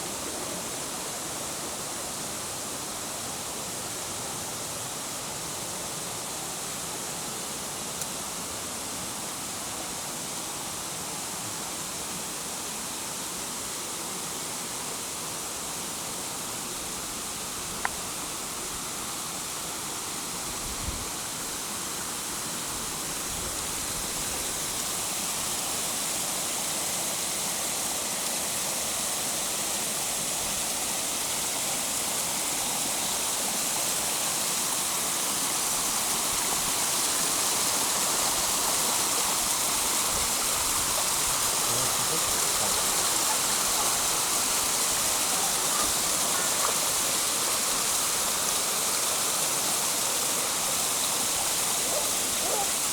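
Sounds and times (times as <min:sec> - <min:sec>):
waterfall rushing: 0:21.6 - 0:52.9.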